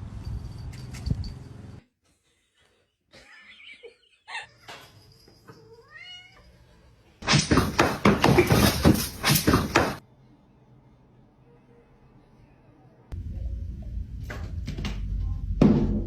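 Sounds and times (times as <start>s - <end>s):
cat meowing: 5.7s - 6.5s.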